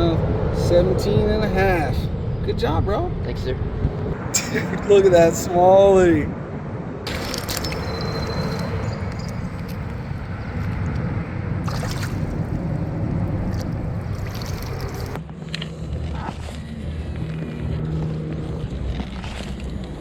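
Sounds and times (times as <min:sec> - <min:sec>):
wind rumble on microphone: 0:00.0 - 0:20.0
river water rushing: 0:07.1 - 0:15.2.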